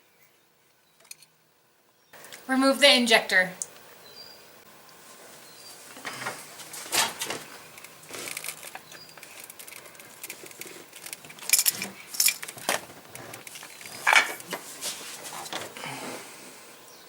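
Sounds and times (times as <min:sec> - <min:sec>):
small metal parts clinking: 0:08.2 - 0:14.4.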